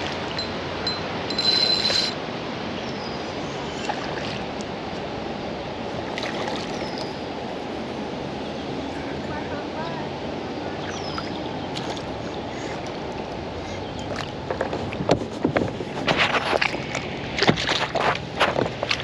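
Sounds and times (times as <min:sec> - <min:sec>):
flowing river water: 0:00.0 - 0:19.0
faint high chirps: 0:00.4 - 0:02.2
high-pitched sound: 0:00.4 - 0:02.2.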